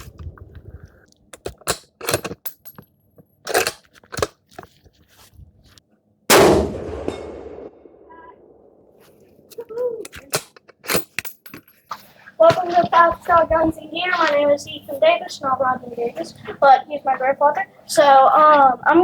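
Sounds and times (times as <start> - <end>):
sharp clicks and knocks: 1.1 - 4.4
rifle shot: 6.3 - 8.8.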